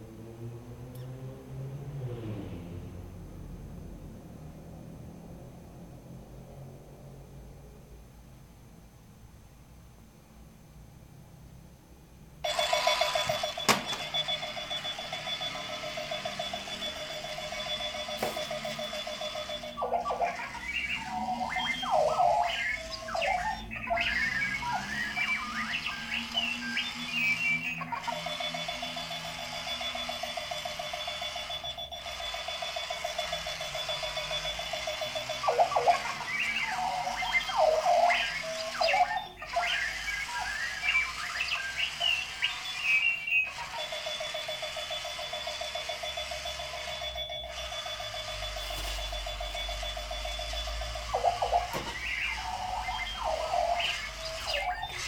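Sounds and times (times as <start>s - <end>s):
alarm clock pulsing buzz: 12.4s - 55.0s
alarm clock warbling chirps: 12.4s - 55.0s.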